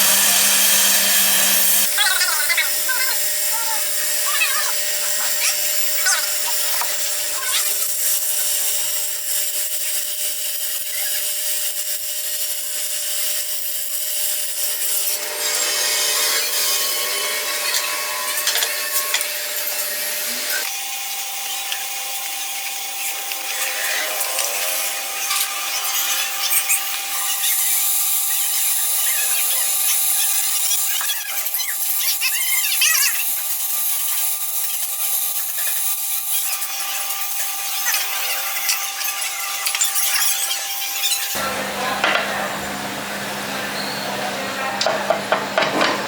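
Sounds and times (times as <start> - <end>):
tool scraping hard material: 12.5 - 20.7.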